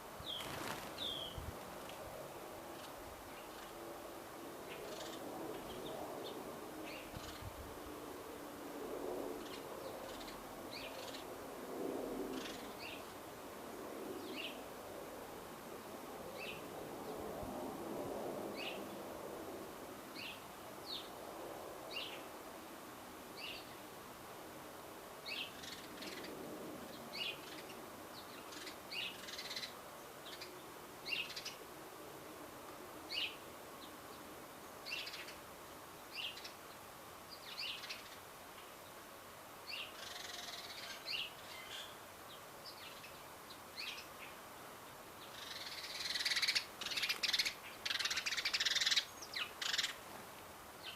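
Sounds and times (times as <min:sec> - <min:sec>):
low steady background noise: 0:00.0 - 0:50.9
birds chirping: 0:00.2 - 0:01.4.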